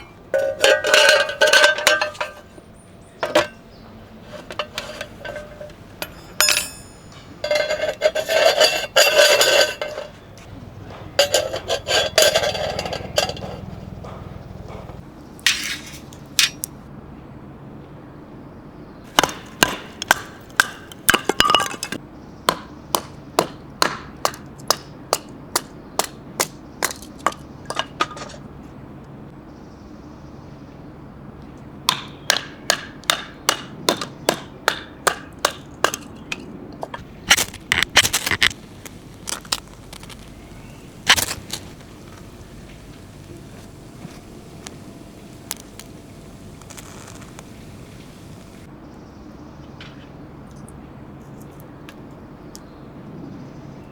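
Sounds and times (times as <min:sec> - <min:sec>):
sharp evenly spaced knocks: 0:13.8 - 0:15.1, 0:19.1 - 0:28.2, 0:31.9 - 0:37.1.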